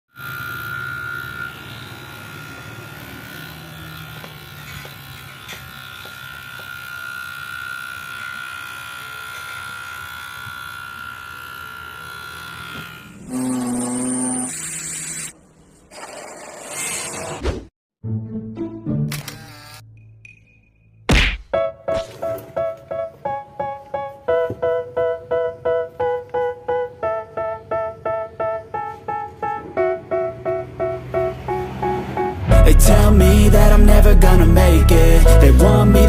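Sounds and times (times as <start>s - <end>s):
electric shaver motor whining: 0.1s - 15.4s, 19.1s - 19.9s
low motor buzz: 0.1s - 15.4s.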